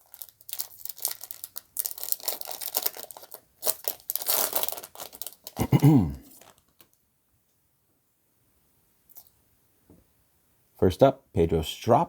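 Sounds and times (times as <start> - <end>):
wrapper crinkling and tearing: 0.0 - 7.0.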